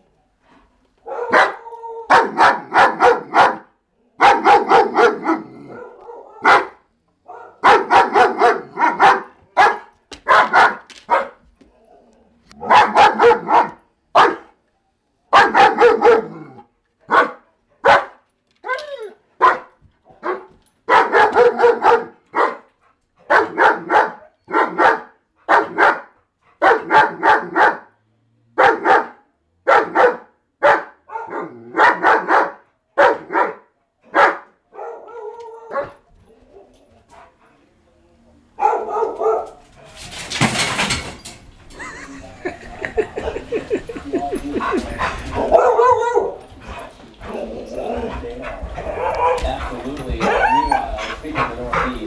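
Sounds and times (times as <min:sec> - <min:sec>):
dog barking: 0:01.0 - 0:11.4, 0:12.6 - 0:14.6, 0:15.3 - 0:16.4, 0:17.1 - 0:18.2, 0:19.4 - 0:22.7, 0:23.3 - 0:27.9, 0:28.6 - 0:36.0, 0:38.6 - 0:39.6, 0:45.4 - 0:46.9, 0:48.4 - 0:50.9.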